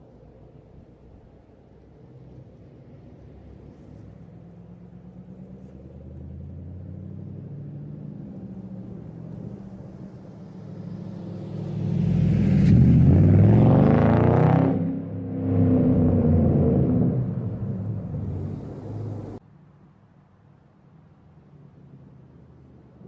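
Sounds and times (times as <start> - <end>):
car engine idling and revving: 1.8 - 19.4.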